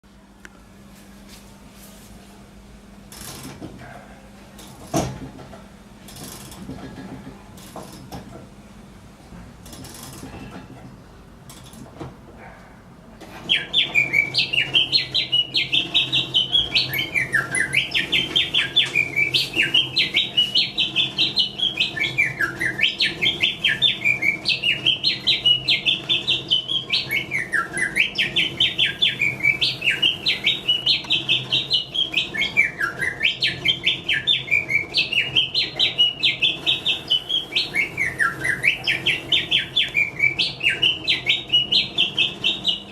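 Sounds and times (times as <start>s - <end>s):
mechanical bird whistling: 13.5s - 42.9s.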